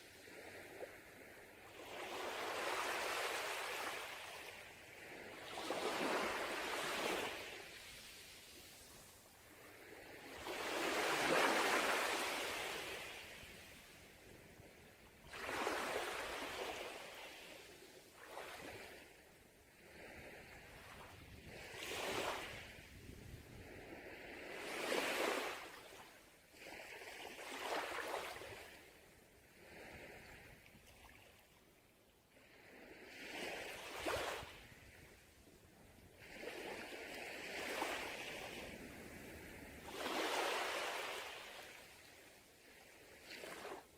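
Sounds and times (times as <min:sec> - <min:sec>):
sea waves breaking on beach: 0:01.8 - 0:13.9, 0:15.3 - 0:19.1, 0:23.7 - 0:26.0, 0:36.2 - 0:43.9.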